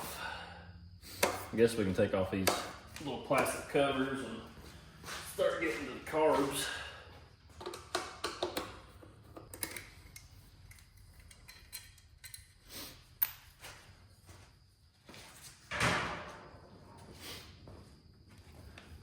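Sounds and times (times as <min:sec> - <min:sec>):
clicks and knocks of hand work: 0:01.1 - 0:01.5, 0:02.4 - 0:03.6, 0:07.5 - 0:12.6.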